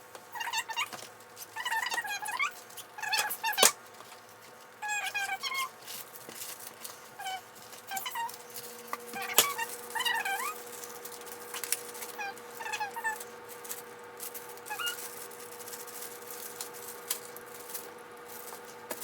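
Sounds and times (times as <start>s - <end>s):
pet whimpering: 12.2s - 13.2s, 14.7s - 15.1s.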